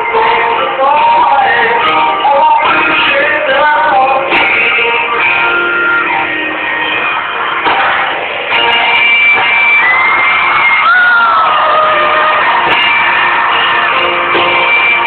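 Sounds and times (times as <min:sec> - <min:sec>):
live pop-rock band with singer: 0:00.0 - 0:15.0.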